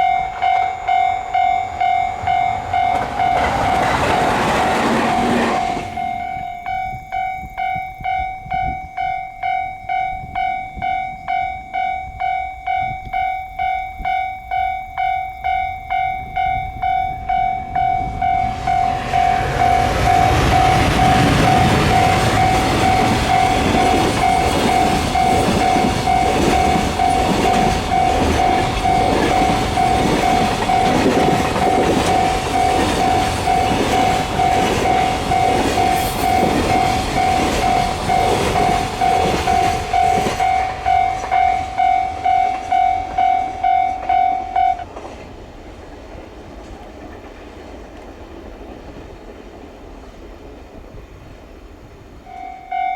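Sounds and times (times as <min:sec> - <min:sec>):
wheels clattering: 0:00.0 - 0:06.9
train passing with rush: 0:00.0 - 0:52.9.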